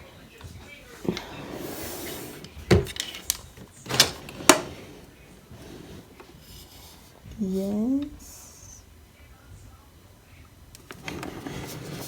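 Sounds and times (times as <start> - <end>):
drawer sliding open: 1.0 - 7.0, 10.9 - 12.0.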